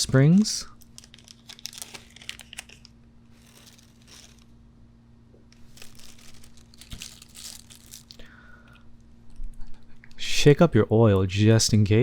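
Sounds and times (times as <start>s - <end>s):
plastic bags crinkling: 0.8s - 4.6s, 5.5s - 8.4s.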